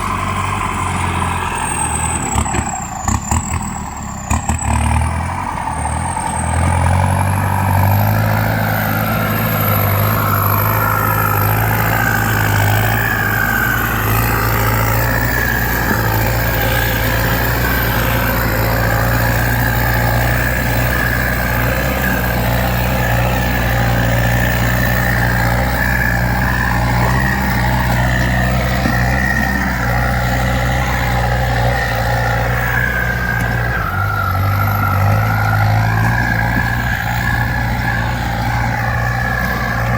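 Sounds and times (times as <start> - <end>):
tractor engine droning: 0.0 - 39.9.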